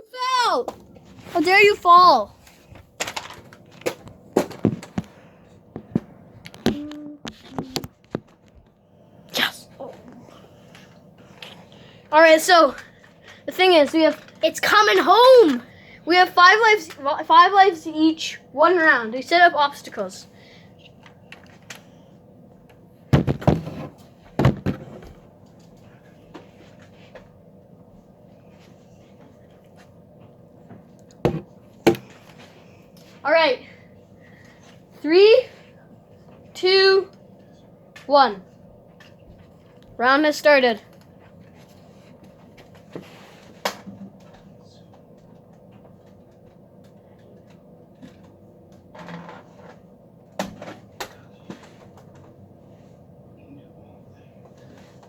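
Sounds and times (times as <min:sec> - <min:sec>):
objects knocking and thumping: 0:02.7 - 0:08.6, 0:23.1 - 0:25.2, 0:31.2 - 0:32.2.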